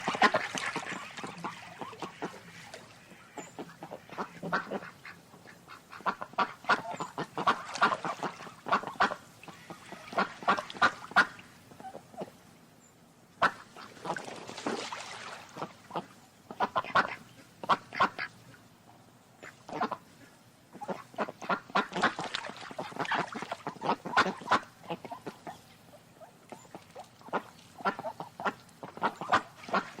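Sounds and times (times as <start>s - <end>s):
ducks quacking: 0.0s - 12.4s, 15.5s - 18.4s, 19.4s - 30.0s.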